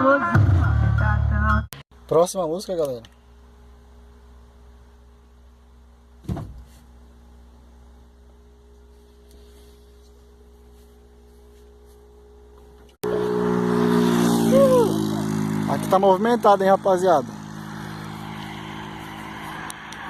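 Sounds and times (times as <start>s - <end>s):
faint steady hum: 2.0s - 13.0s
short knock: 6.2s - 6.7s.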